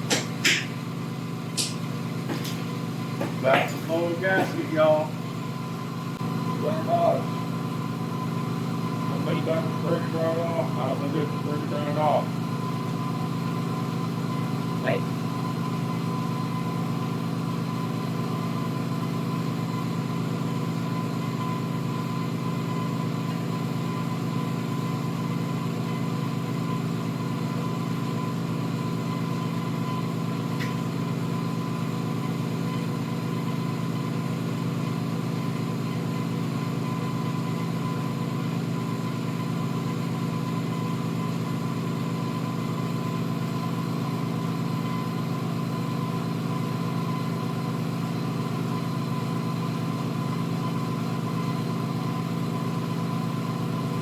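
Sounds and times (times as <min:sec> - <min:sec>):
machine motor humming: 0:00.0 - 0:12.5.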